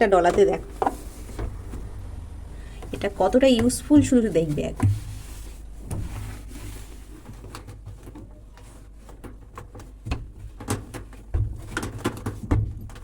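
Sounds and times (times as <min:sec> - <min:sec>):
cloth rubbing a surface: 0:00.7 - 0:01.9, 0:03.0 - 0:07.5
knocks on a washing machine: 0:12.4 - 0:13.0.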